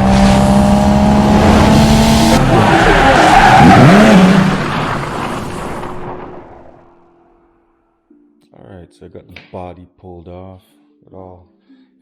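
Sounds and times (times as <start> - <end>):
car engine running hard: 0.0 - 5.6
tyres skidding and squealing: 0.0 - 7.3.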